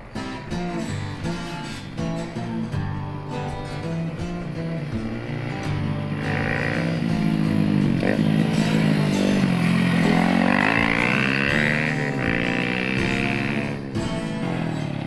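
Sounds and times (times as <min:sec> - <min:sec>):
motorcycle engine exhaust: 0:04.9 - 0:15.0.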